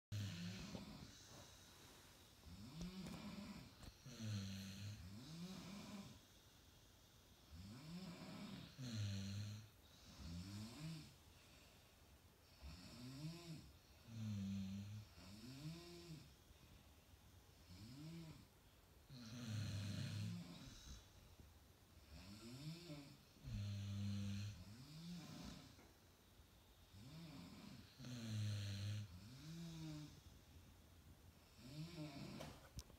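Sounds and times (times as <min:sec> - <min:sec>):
people snoring: 0:00.1 - 0:01.6, 0:02.5 - 0:06.2, 0:07.6 - 0:11.1, 0:19.1 - 0:21.0, 0:22.0 - 0:25.8, 0:27.0 - 0:30.2, 0:31.5 - 0:32.6.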